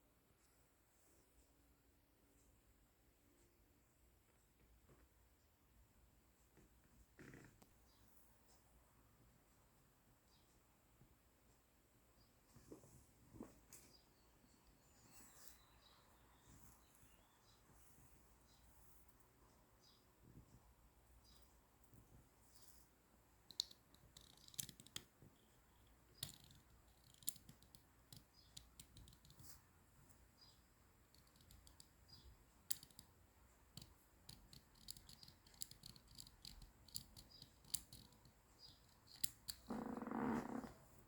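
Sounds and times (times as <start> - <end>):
small parts clicking and tapping: 23.4 - 29.7, 30.4 - 39.7.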